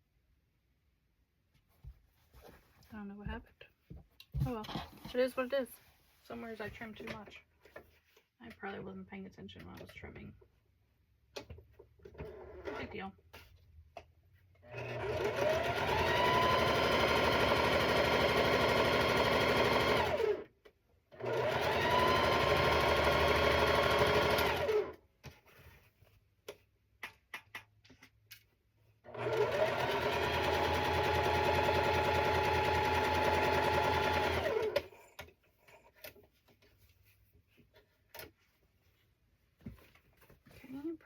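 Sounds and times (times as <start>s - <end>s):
sewing machine stitching: 14.6s - 20.5s, 21.1s - 25.0s, 29.0s - 35.0s.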